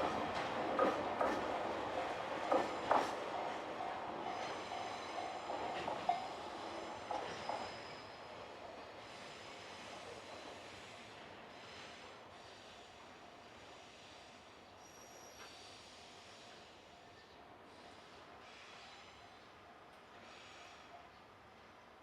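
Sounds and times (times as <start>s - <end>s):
train wheels clacking over rail joints: 0.0s - 8.0s
high squeal of wheel flanges: 7.0s - 8.5s.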